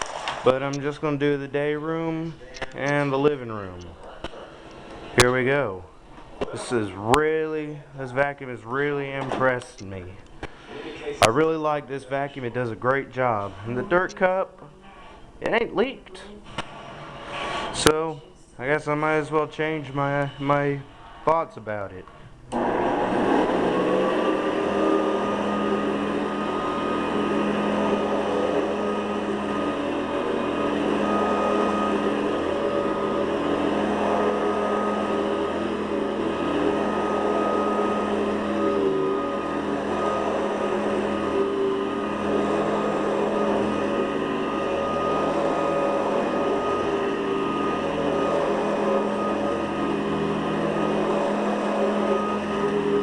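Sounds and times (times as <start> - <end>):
upright vacuum cleaner running: 0.0 - 7.6, 22.5 - 53.0.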